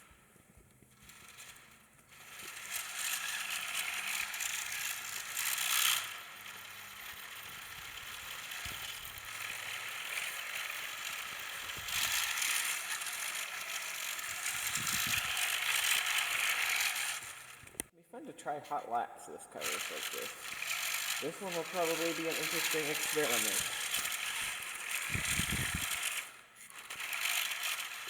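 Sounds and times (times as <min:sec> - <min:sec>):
toy car motor rattling whir: 0:00.0 - 0:18.5, 0:19.5 - 0:28.0.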